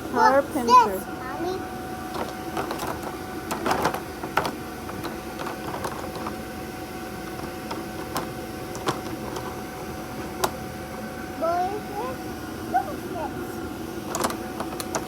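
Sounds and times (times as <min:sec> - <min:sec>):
steady hum: 0:09.5 - 0:15.0.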